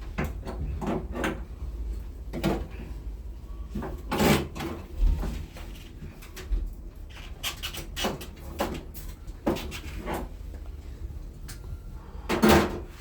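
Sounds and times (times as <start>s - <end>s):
knocks and clunks of handling: 0.0s - 3.0s.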